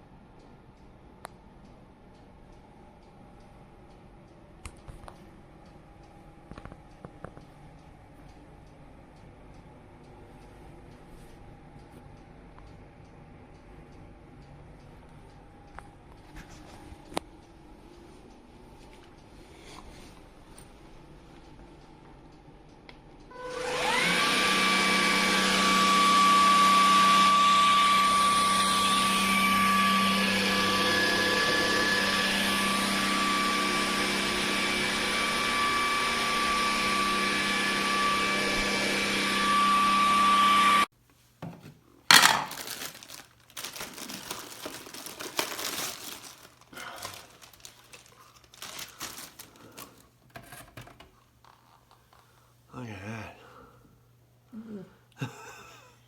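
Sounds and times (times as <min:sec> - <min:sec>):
vacuum cleaner motor whining: 0:23.3 - 0:40.9.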